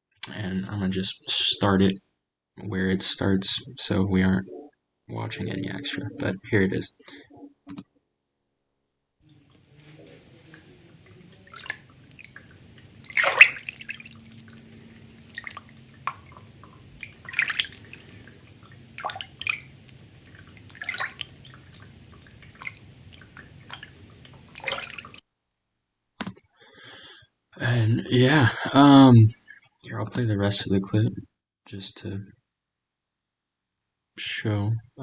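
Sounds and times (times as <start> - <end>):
low steady hum: 9.3 - 25.2
water splashing in a sink: 9.3 - 25.2.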